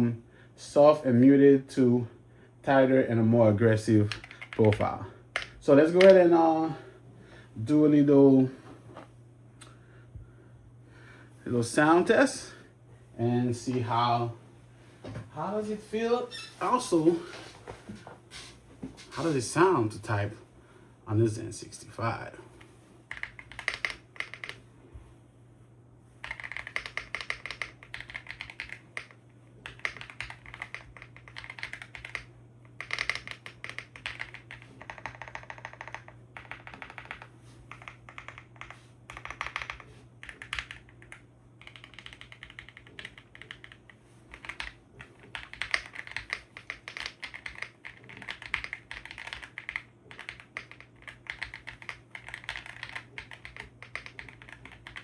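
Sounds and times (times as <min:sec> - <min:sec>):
faint low hum: 0:00.0 - 0:55.0
mechanical keyboard typing: 0:04.0 - 0:06.2, 0:23.1 - 0:24.6, 0:26.2 - 0:55.0.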